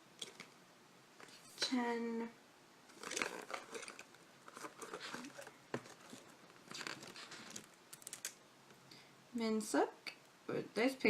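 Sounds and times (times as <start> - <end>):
album pages turning: 2.9 - 8.4.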